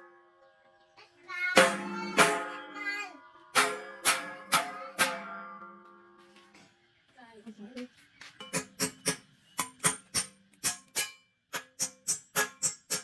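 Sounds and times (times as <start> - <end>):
plucked string notes: 1.4 - 6.3.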